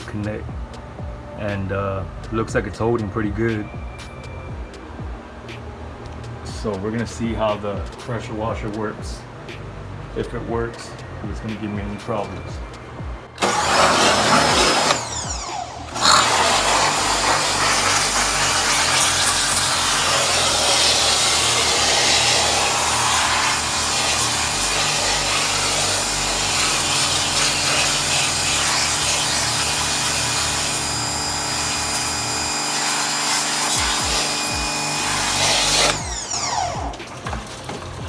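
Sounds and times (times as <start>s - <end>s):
motor spinning down whine: 13.4s - 37.1s
pressure washer running: 13.4s - 38.0s.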